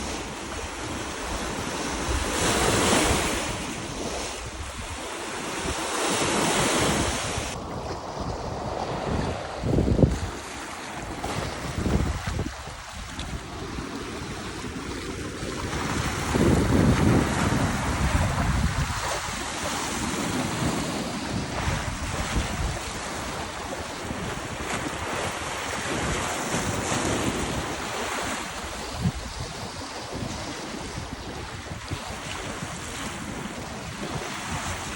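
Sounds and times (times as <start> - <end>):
lake waves washing in: 0.0 - 34.9
wind buffeting microphone: 0.0 - 34.9.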